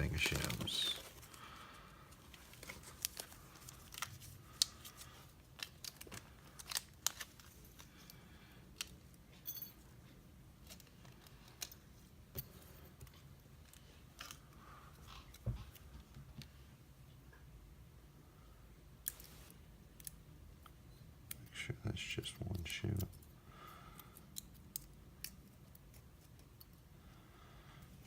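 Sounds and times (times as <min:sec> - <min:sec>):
small rustles: 0:00.0 - 0:07.8.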